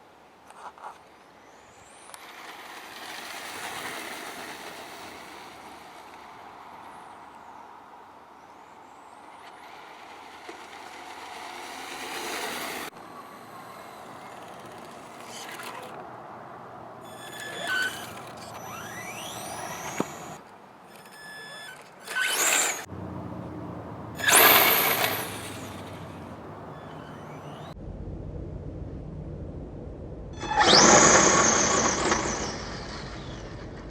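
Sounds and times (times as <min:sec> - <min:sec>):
rc car electric motor whining: 0:12.0 - 0:16.0, 0:17.0 - 0:22.9, 0:24.2 - 0:27.8, 0:30.4 - 0:33.7.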